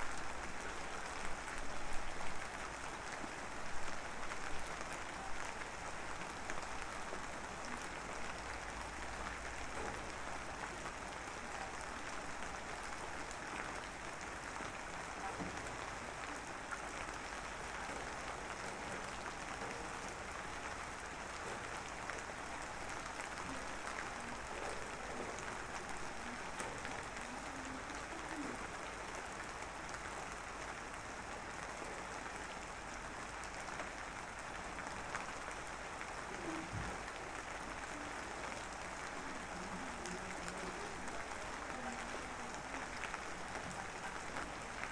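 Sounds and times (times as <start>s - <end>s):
light rain drizzle: 0.0s - 44.9s.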